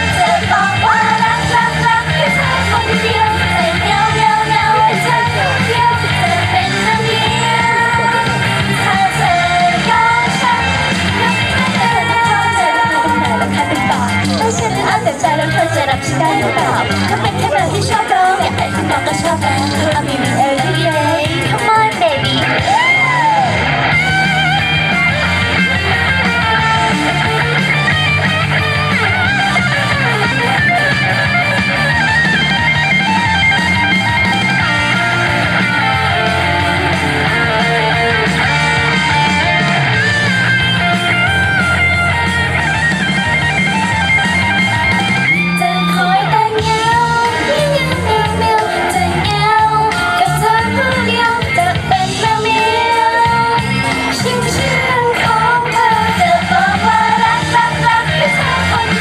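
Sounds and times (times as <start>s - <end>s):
loud pop-rock song: 0.0s - 59.0s.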